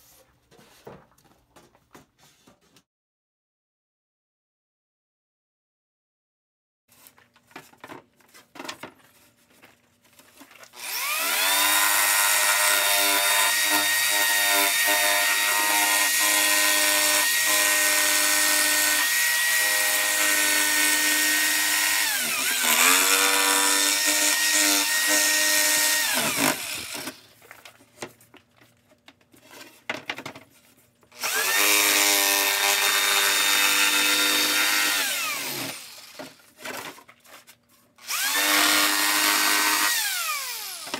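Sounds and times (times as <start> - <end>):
power tool motor running: 10.8 - 27.2, 31.2 - 36.4, 38.0 - 40.9.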